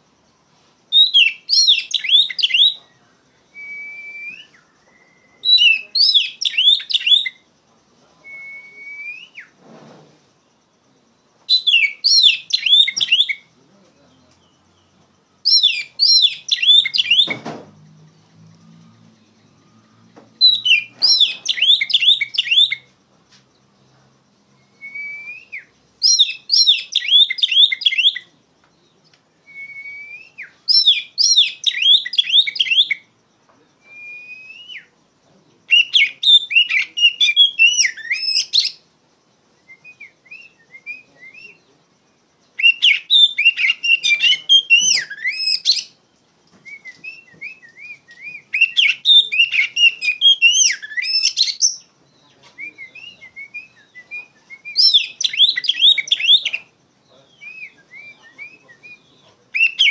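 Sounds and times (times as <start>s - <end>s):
bird singing whistled phrases: 0.9s - 7.4s, 8.2s - 9.6s, 11.5s - 13.5s, 14.3s - 17.6s, 19.4s - 22.9s, 24.6s - 28.3s, 29.4s - 33.1s, 33.8s - 34.9s, 35.7s - 38.8s, 39.6s - 41.7s, 42.6s - 46.0s, 46.6s - 56.7s, 57.3s - 59.9s.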